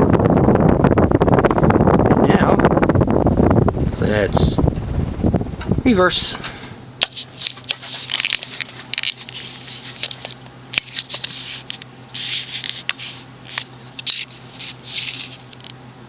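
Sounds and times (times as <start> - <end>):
ceiling fan motor hum: 0.0 - 16.0
scratchy rustles: 7.1 - 15.8.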